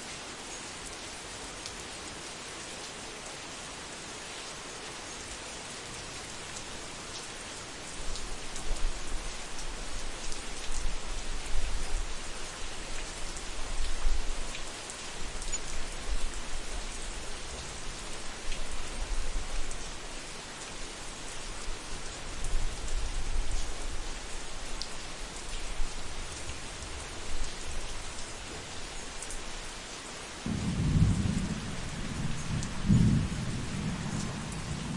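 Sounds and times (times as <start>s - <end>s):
rain pattering: 0.1s - 34.9s
distant thunder rumble: 30.5s - 34.9s.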